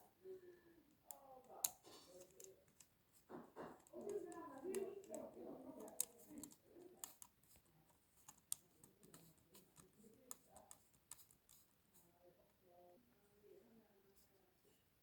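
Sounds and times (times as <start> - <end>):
faint clicks and taps: 0.9 - 12.6.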